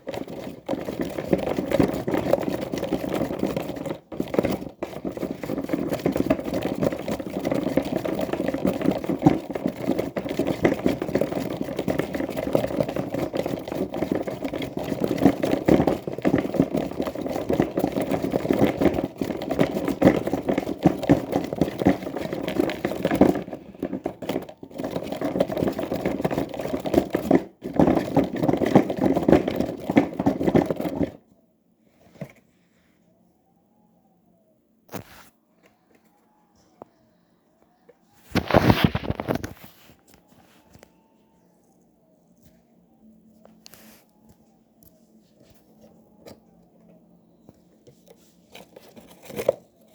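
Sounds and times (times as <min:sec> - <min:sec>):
washing machine churning water: 0:00.0 - 0:30.9.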